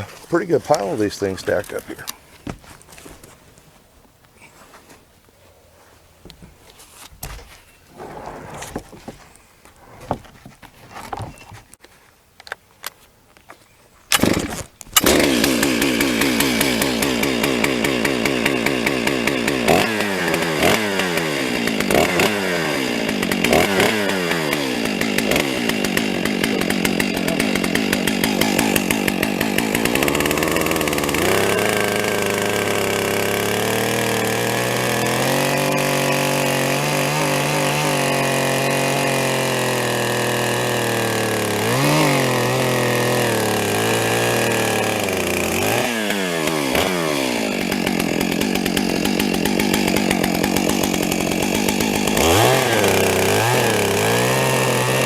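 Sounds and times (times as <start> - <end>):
chainsaw running: 0.0 - 2.2, 14.1 - 55.0.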